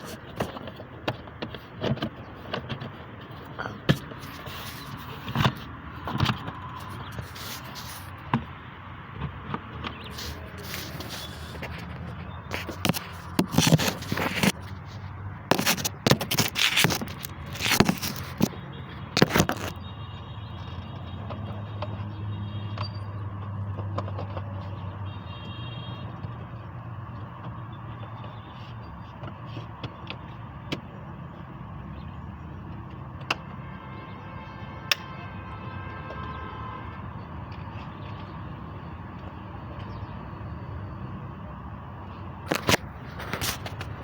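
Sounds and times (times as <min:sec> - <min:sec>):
car parts clattering and scraping: 0:00.0 - 0:19.8, 0:42.4 - 0:44.0.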